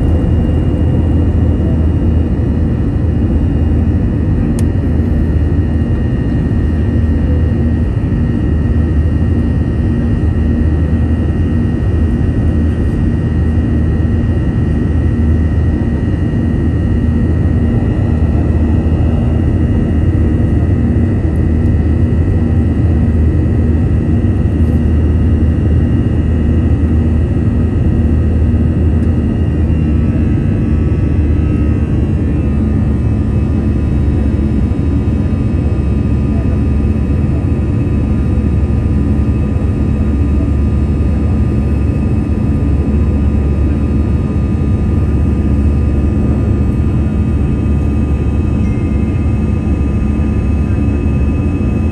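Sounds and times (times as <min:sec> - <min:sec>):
jet engine roar: 0:00.0 - 0:51.9
jet engine whine: 0:00.0 - 0:51.9
faint tones shifting in pitch: 0:48.6 - 0:49.5.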